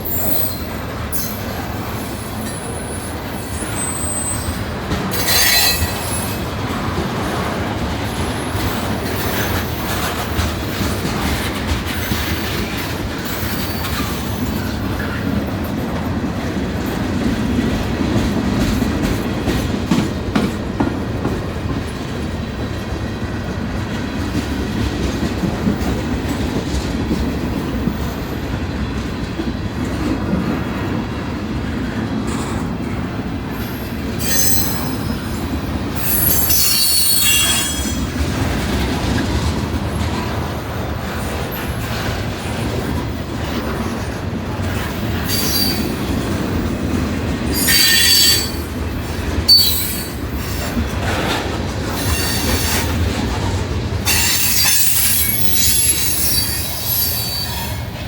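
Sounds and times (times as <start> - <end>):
high wheel squeal: 0.0 - 6.4, 34.2 - 35.3, 36.0 - 38.1, 45.2 - 45.9, 47.5 - 48.7, 49.5 - 50.6, 52.0 - 52.9, 54.1 - 57.9
train wheels clicking over rail joints: 0.0 - 58.0.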